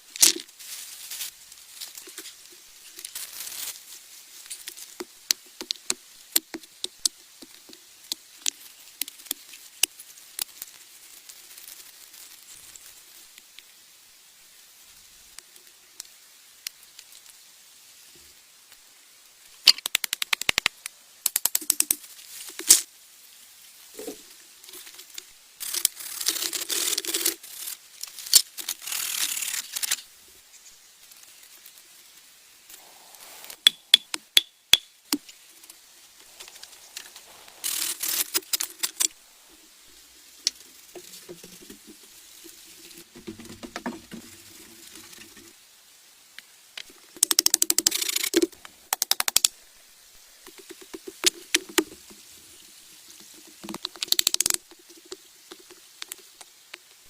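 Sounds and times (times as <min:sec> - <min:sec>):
rapid clicking: 0:47.2 - 0:49.5.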